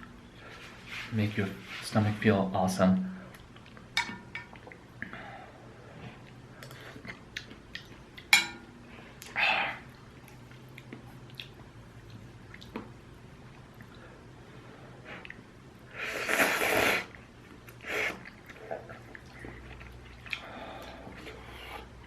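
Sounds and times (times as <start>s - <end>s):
chewing and mouth noises: 6.1s - 8.3s, 9.2s - 14.1s, 16.2s - 21.9s.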